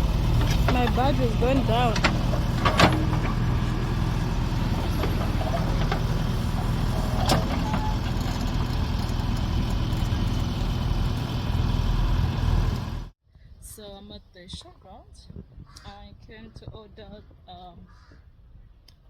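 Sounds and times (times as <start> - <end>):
motor vehicle rumbling: 0.0 - 13.2.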